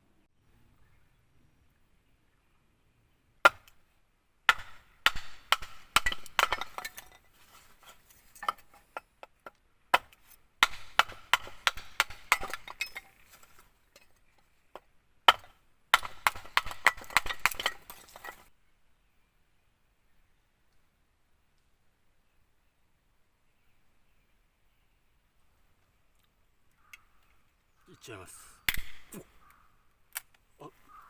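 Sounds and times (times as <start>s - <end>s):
hard objects knocking and clinking: 5.1s - 7.3s, 8.3s - 9.6s, 10.6s - 13.2s, 16.0s - 18.5s.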